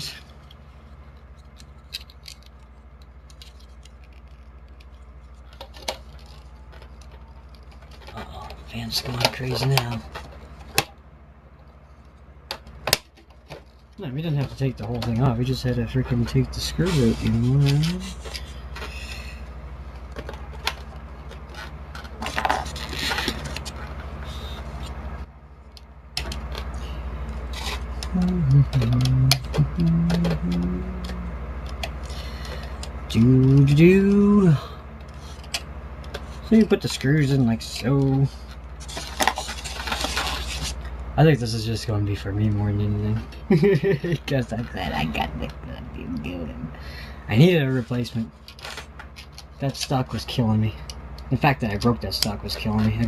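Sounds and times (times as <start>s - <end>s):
fan humming: 0.0s - 53.0s
small clicks of parts handled: 1.2s - 8.1s
rustling: 16.1s - 25.0s, 38.3s - 41.0s.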